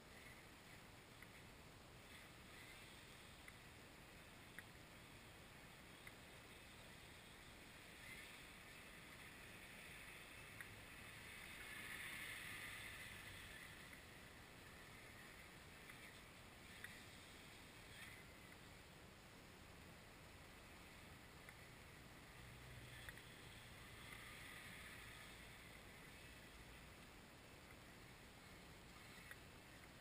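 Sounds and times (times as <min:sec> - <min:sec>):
faint steady hiss: 0:00.0 - 0:30.0
tiny clicks: 0:15.8 - 0:17.2, 0:28.9 - 0:30.0.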